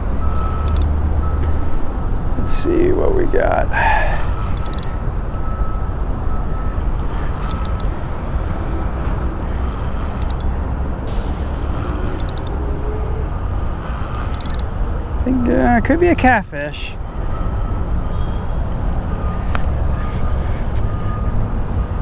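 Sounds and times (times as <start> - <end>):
road traffic rumble: 0.0 - 22.0
faint rapid clicking: 0.2 - 1.5, 6.8 - 7.9, 9.3 - 10.5, 11.2 - 12.6, 13.4 - 14.8.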